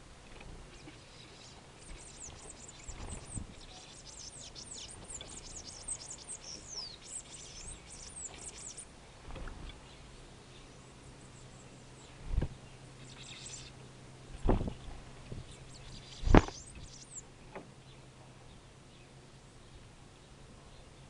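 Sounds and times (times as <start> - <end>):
songbirds chirping: 0.0 - 21.0.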